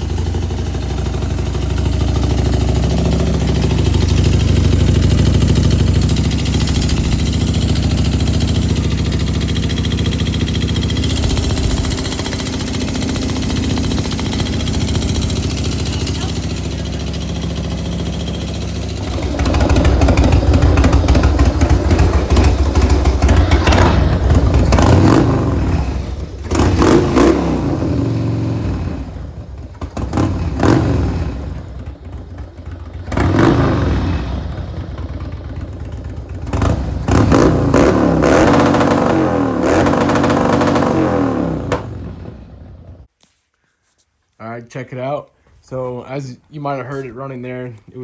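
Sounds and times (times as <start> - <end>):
light engine knock: 0.0 - 25.4, 41.6 - 42.2
motorcycle engine revving: 0.0 - 43.1.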